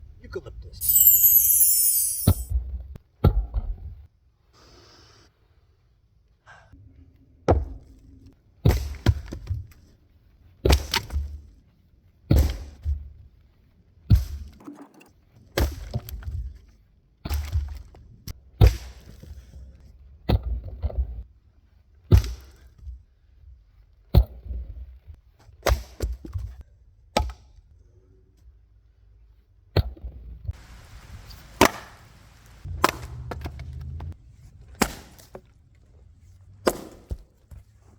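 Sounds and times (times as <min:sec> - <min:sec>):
axe splitting firewood: 0:31.6 - 0:31.9, 0:32.7 - 0:34.0, 0:34.6 - 0:35.5, 0:36.6 - 0:37.3.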